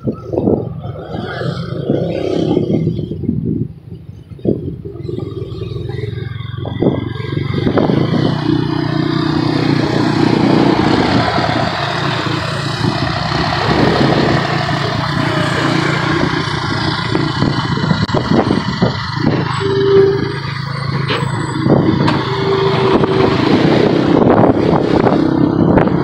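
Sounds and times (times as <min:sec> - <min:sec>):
wind and road noise: 0:00.0 - 0:26.0
motorcycle engine running: 0:04.1 - 0:26.0
short beep: 0:19.5 - 0:23.2.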